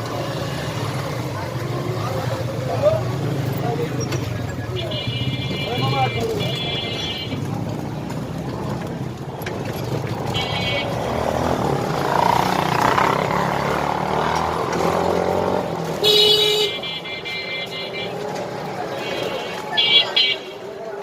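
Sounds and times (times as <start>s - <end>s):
engine and road noise: 0.0s - 21.0s
motorbike horns honking: 3.9s - 8.3s, 10.1s - 20.8s.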